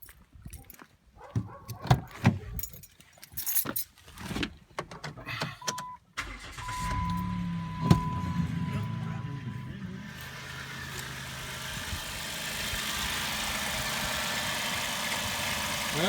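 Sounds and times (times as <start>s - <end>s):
car engine starting and idling: 5.2s - 16.0s.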